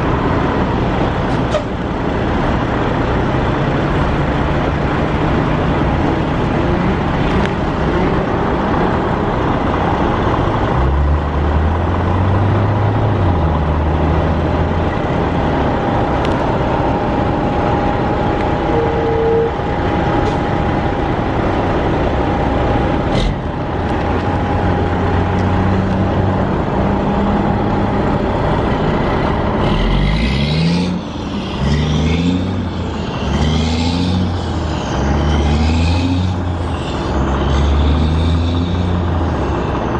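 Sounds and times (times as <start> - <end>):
road traffic passing: 0.0 - 39.9
vehicle accelerating through gears: 29.5 - 39.9.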